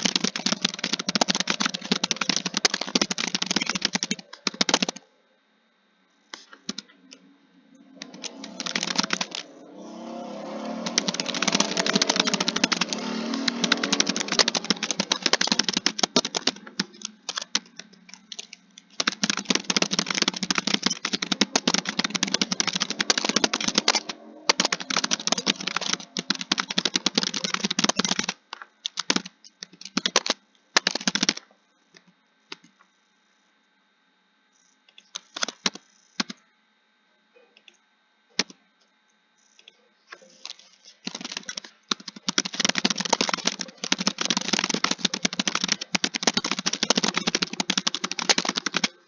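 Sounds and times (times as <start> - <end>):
keyboard typing: 0.0 - 5.1, 6.3 - 31.4, 34.9 - 36.4, 39.6 - 49.0.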